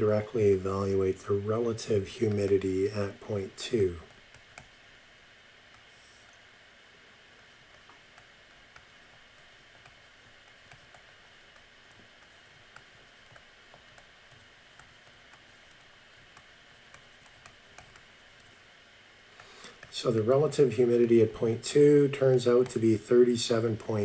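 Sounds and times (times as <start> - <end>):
faint tapping clicks: 7.4 - 18.7.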